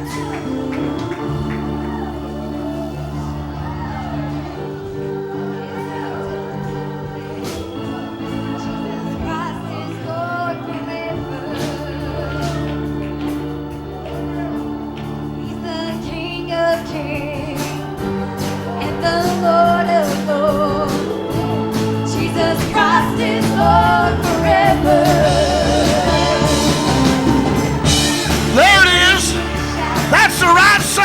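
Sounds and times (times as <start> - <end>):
voices singing with vibrato: 0.0 - 31.0
band with drums playing: 17.5 - 31.0.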